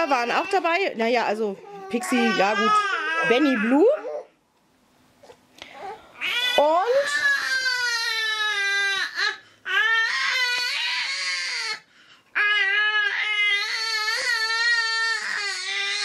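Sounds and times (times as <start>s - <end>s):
baby crying: 1.6s - 4.3s, 5.8s - 11.8s, 12.4s - 16.0s.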